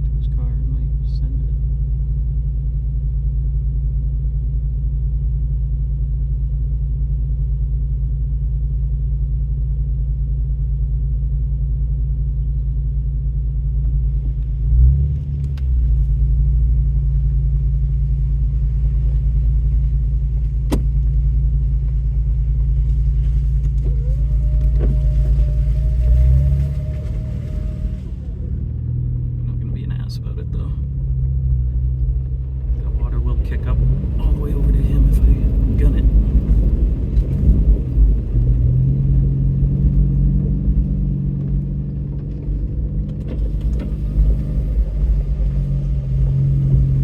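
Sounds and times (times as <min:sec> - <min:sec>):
truck engine rumbling: 0:00.0 - 0:09.3, 0:10.4 - 0:47.0
steady whine: 0:15.4 - 0:47.0.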